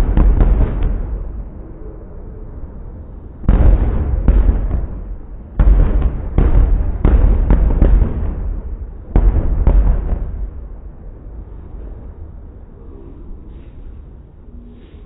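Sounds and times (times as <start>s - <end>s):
fireworks booming: 0.0s - 2.1s, 3.0s - 12.6s.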